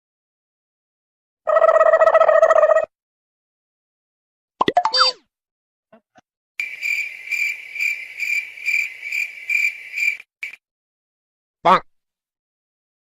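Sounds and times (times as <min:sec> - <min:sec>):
cricket chirping: 0:06.6 - 0:10.6.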